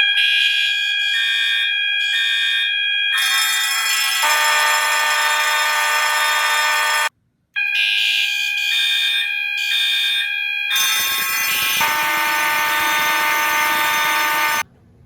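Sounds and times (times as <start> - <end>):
fire alarm horns sounding: 0.0 - 14.6
harsher alarm horn: 0.0 - 14.6.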